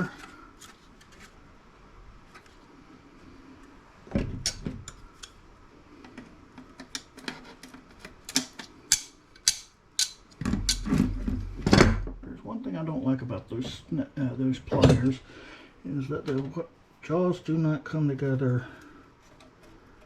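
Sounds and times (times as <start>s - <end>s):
pliers clicking and snapping: 8.2s - 10.9s.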